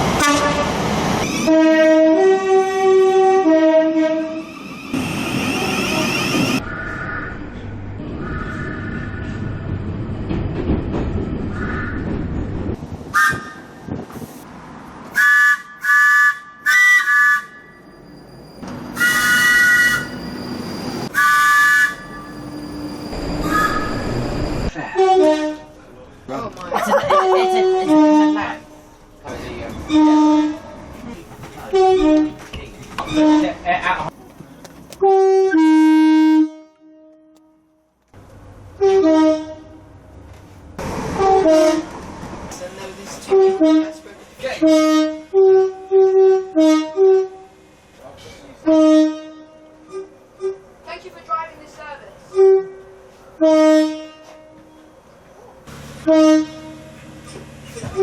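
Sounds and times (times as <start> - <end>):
train horn blasts: 0.2 - 0.8, 1.4 - 4.4, 18.9 - 20.2, 21.1 - 22.3, 23.2 - 24.2, 24.9 - 25.7, 29.9 - 30.8, 35.0 - 37.7, 38.8 - 39.8, 41.2 - 41.9, 43.3 - 44.0, 44.6 - 47.5, 48.6 - 50.6, 52.3 - 54.7, 56.0 - 57.0.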